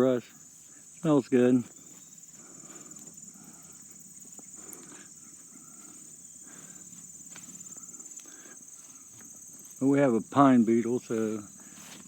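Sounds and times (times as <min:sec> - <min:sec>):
crickets chirping: 0:00.0 - 0:12.0
footsteps brushing through grass: 0:00.0 - 0:12.0.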